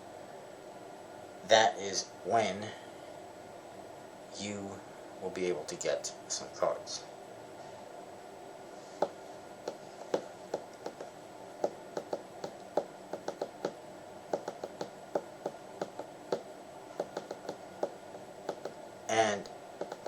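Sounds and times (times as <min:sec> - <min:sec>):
playing cards clicking: 0:19.8 - 0:20.0.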